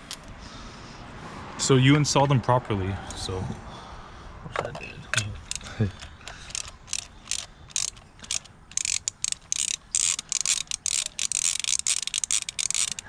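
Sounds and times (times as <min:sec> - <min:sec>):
socket ratchet wrench clicking: 0:05.2 - 0:13.0.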